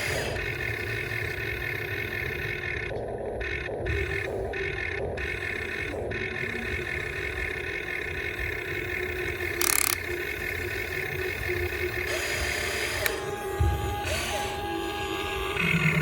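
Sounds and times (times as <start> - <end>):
electric gear motors whining: 3.9 - 16.0
harsh gear grinding: 9.6 - 10.0.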